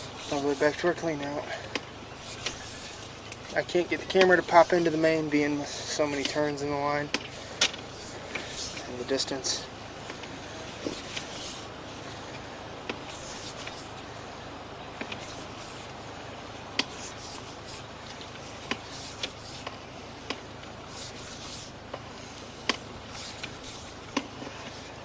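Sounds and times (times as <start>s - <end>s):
hissing rubs: 0.0s - 1.2s, 2.1s - 12.4s, 13.0s - 14.1s, 15.0s - 16.0s, 16.8s - 19.8s, 20.9s - 25.0s.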